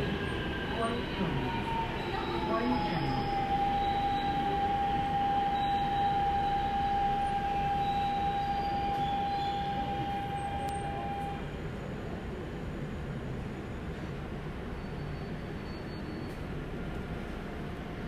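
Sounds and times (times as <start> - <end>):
steady high-pitched tone: 0.0 - 11.4
subway car rumble and rail noise: 0.0 - 18.0.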